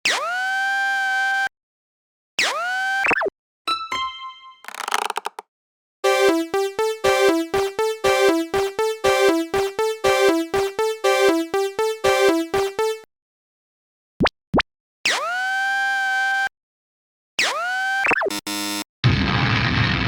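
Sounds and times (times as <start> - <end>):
synthesized crossing alarm tones: 6.0 - 13.0.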